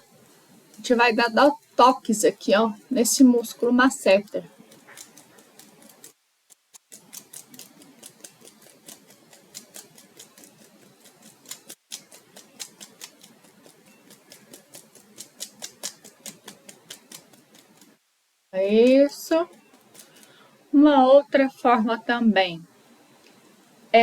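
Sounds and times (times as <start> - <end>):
fingertips tapping on cheeks: 6.7 - 17.9.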